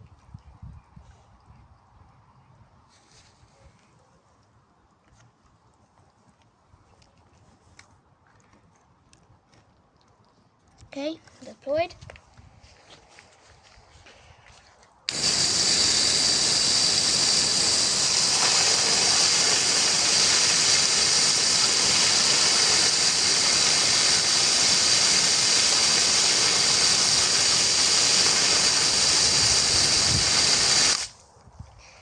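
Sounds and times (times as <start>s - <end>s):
air blower rushing hiss: 15.1s - 31.2s.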